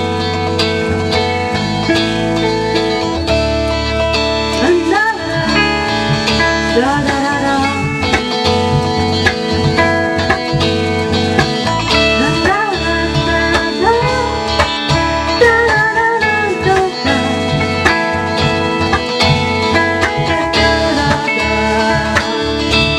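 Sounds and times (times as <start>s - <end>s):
band music with guitars: 0.0s - 22.9s.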